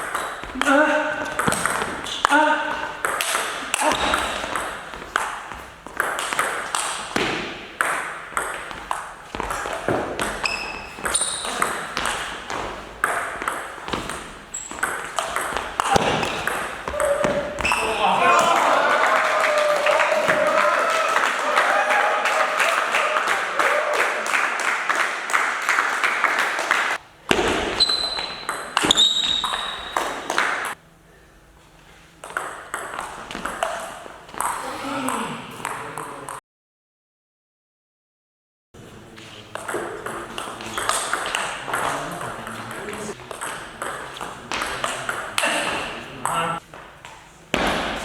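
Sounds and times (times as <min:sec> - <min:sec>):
table tennis ball hits: 0:00.0 - 0:18.6, 0:27.3 - 0:30.8, 0:32.2 - 0:34.6, 0:39.5 - 0:46.5, 0:47.5 - 0:48.0
short high squeaks: 0:10.4 - 0:11.6, 0:27.8 - 0:30.3.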